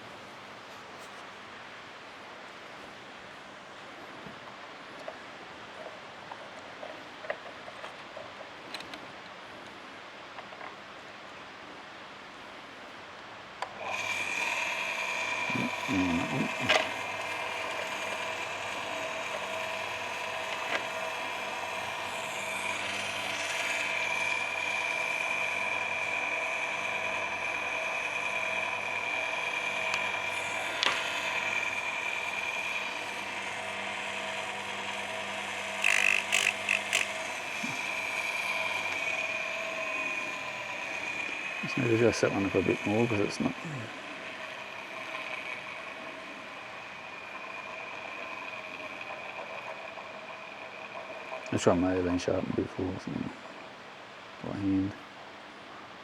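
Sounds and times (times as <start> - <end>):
grinding motor whining: 13.8 - 52.6
sharp clicks: 35.8 - 37.2.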